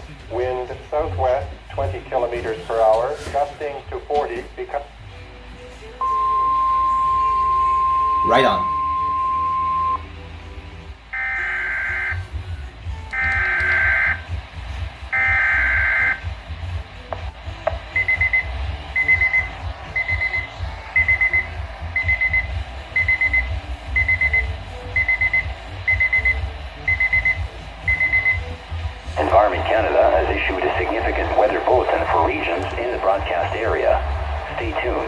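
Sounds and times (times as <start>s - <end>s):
weather radio alarm beeping: 6.0s - 10.1s, 11.2s - 12.3s, 13.2s - 14.4s, 15.1s - 16.3s, 17.9s - 35.0s.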